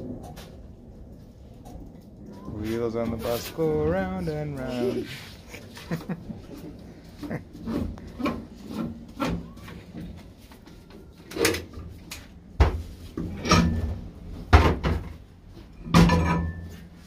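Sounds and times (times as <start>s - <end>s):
knocks and clunks: 12.6s - 16.7s.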